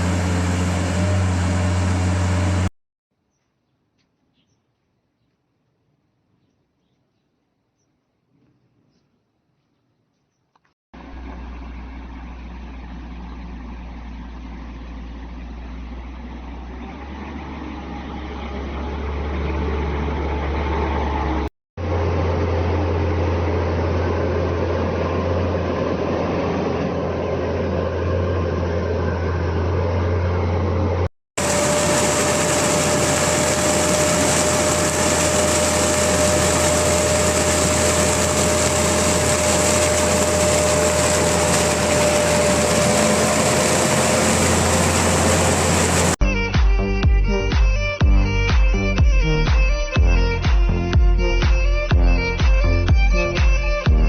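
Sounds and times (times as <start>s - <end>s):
skid steer loader engine running: 0.0s - 2.7s, 11.0s - 54.0s
steady high whine: 21.8s - 46.2s.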